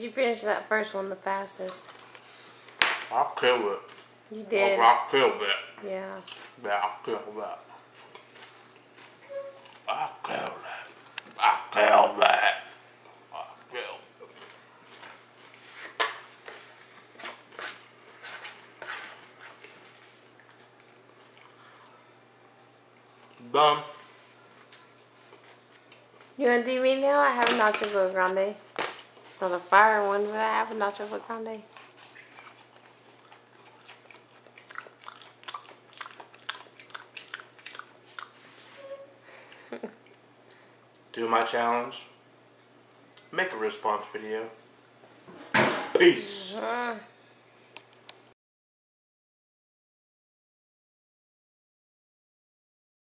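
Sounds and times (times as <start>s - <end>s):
crunching and chewing chips: 7.8s - 11.2s, 14.2s - 15.6s, 31.7s - 38.5s.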